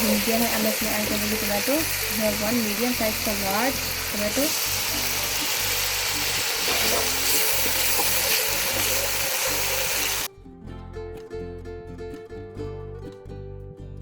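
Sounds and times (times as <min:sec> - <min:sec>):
tomato sizzling in hot oil: 0:00.0 - 0:10.3
background music: 0:00.0 - 0:14.0.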